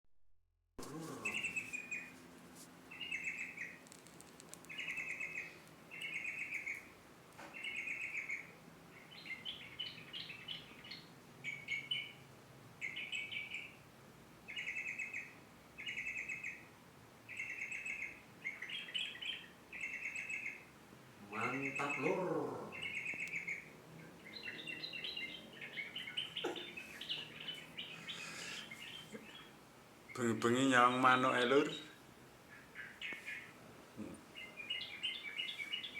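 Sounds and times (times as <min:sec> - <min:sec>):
bulbul singing chattering phrases: 0:00.8 - 0:02.1, 0:21.2 - 0:32.0.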